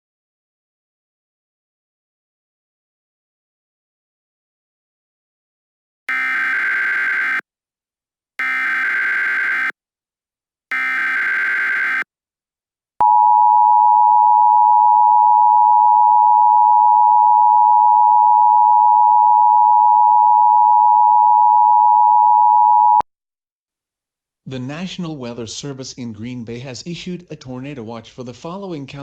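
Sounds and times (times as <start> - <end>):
two-tone attention signal: 6.1 - 7.4, 8.4 - 9.7, 10.7 - 12.0
warbling digital data tones: 6.1 - 7.4, 8.4 - 9.7, 10.7 - 12.0.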